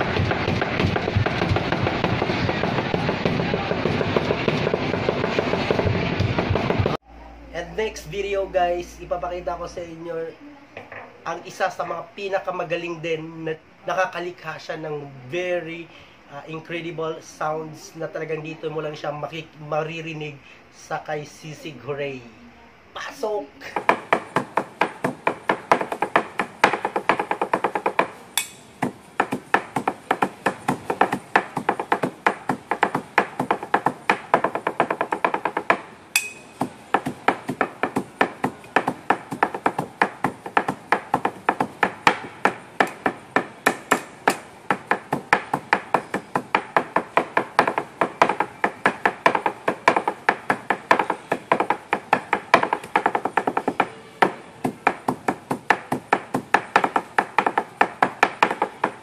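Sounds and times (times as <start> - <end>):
knife chopping on a board: 0.0 - 6.9, 23.7 - 59.0.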